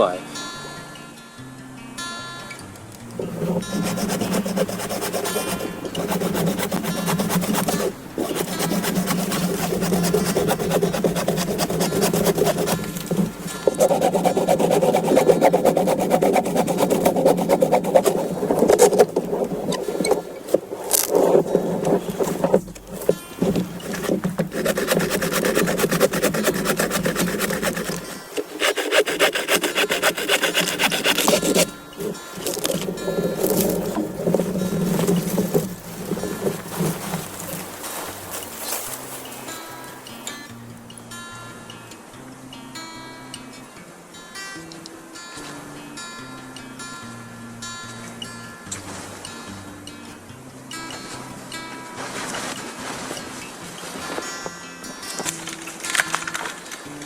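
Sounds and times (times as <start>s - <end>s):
hand saw cutting wood: 3.0s - 39.3s
rapid rasping scrape: 3.0s - 39.8s.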